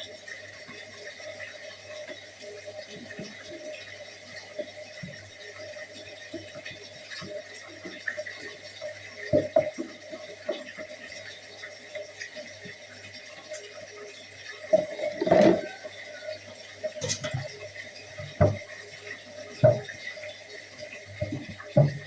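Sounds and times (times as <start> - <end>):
dishes and utensils clinking: 14.7 - 16.2, 16.9 - 17.6.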